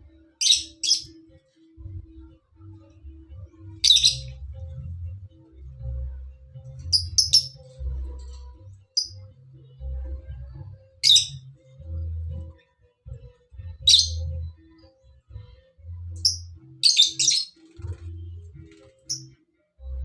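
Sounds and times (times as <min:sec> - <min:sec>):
songbird chirps: 0:00.0 - 0:12.4, 0:13.0 - 0:20.0.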